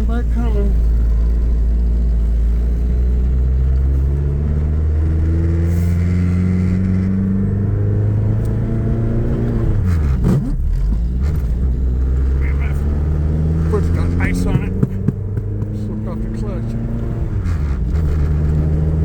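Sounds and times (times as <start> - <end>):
car engine running: 0.0 - 19.0.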